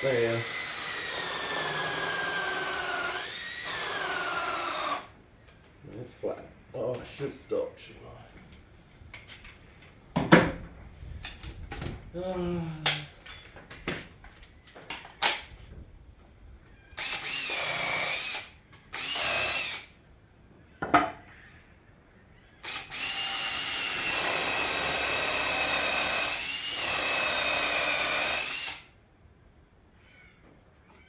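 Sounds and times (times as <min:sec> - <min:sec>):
power tool motor whining: 0:00.0 - 0:05.1, 0:17.0 - 0:19.9, 0:22.6 - 0:28.9.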